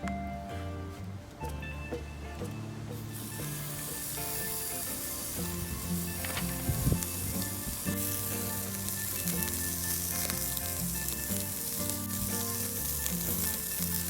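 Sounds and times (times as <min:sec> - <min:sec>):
background music: 0:00.0 - 0:14.0
sizzling crackle: 0:03.0 - 0:14.0.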